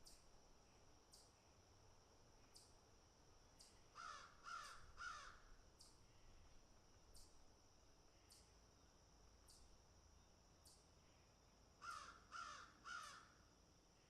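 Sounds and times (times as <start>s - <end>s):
crow cawing: 4.0s - 5.4s, 11.8s - 13.4s.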